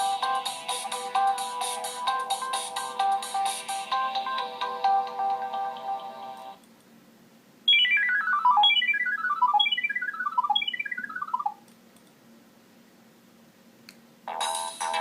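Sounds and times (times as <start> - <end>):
polyphonic ringtone tune: 0.0 - 6.6, 7.7 - 11.5
falling runs of electronic beeps: 7.7 - 11.6.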